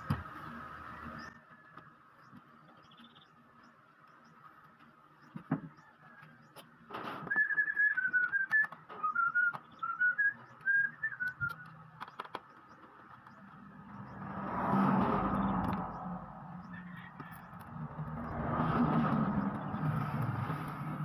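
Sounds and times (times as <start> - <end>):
person whistling a tune: 7.3 - 11.7
sharp clicks: 7.7 - 13.7.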